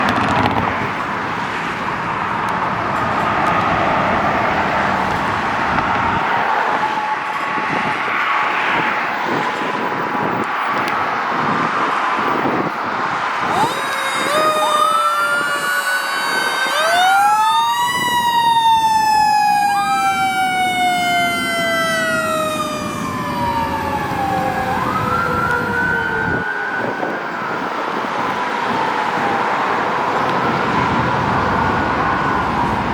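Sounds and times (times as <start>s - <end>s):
road noise: 0.0s - 32.9s
fire engine siren whine: 3.2s - 11.6s, 13.3s - 32.9s
truck engine rumble: 13.4s - 26.5s
mechanical siren winding: 13.5s - 26.2s.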